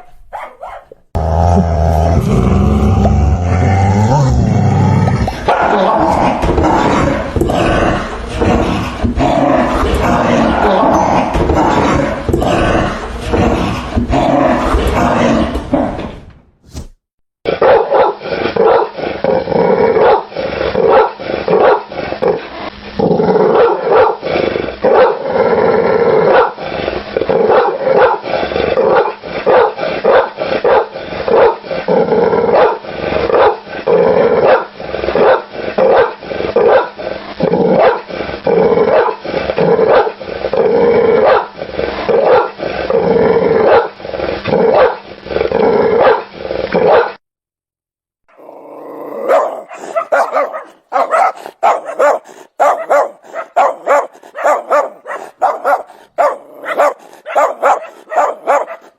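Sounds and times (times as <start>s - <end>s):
dog barking rapidly: 0.0s - 1.0s, 17.6s - 18.9s, 49.2s - 58.9s.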